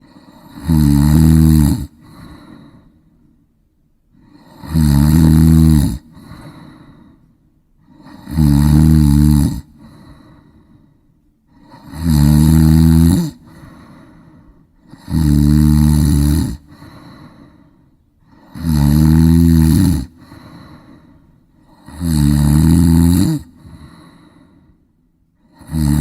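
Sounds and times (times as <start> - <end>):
person snoring: 0.0 - 3.0, 4.2 - 7.2, 7.8 - 10.9, 11.5 - 24.7, 25.4 - 26.0
soft breath: 1.9 - 3.5, 6.0 - 8.2, 9.7 - 11.9, 13.4 - 15.0, 16.6 - 18.6, 20.1 - 21.9, 23.5 - 25.6.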